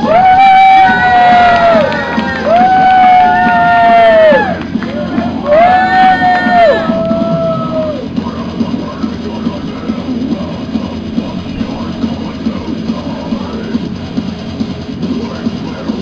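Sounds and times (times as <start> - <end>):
loud rock music: 0.0 - 16.0
pounding drum kit: 0.0 - 16.0.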